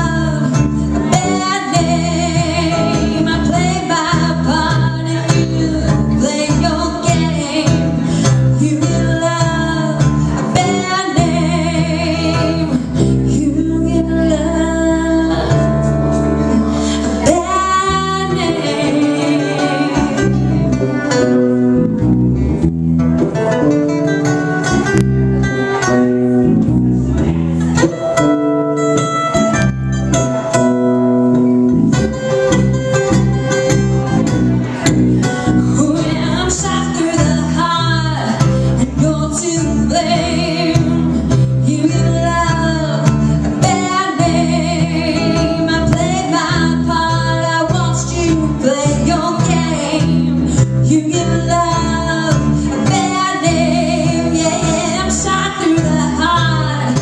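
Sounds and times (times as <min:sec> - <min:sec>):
person singing: 0:00.0 - 0:21.6, 0:33.3 - 0:57.0
band music with guitar: 0:00.0 - 0:57.0.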